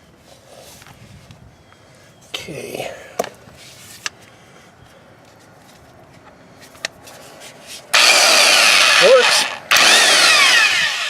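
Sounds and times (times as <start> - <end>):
electric impact wrench: 7.9 - 11.0.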